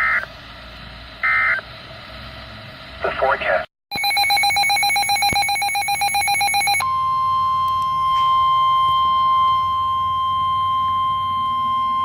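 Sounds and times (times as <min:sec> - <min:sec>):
steady warning alarm tone: 0:03.9 - 0:12.0.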